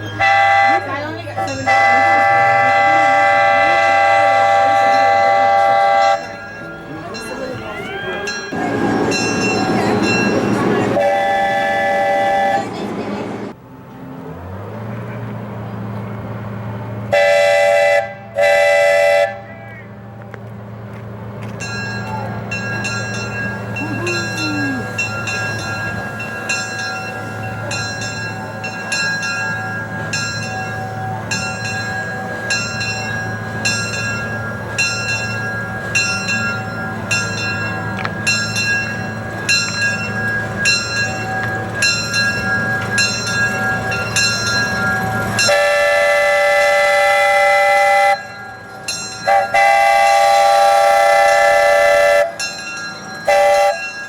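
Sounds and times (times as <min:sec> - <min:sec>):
steam locomotive chuffing: 0:00.0 - 0:13.6, 0:21.6 - 0:54.0
steam whistle blasts: 0:01.7 - 0:06.4, 0:10.4 - 0:12.7, 0:45.5 - 0:48.4, 0:49.3 - 0:52.4, 0:53.3 - 0:54.0.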